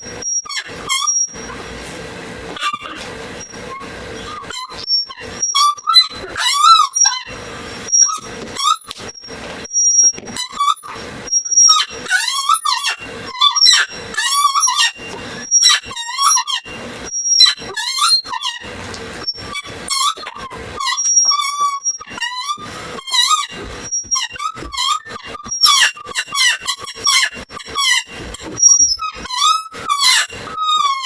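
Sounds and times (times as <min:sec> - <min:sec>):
high wavering squeaks: 0:00.0 - 0:01.8, 0:02.5 - 0:31.0.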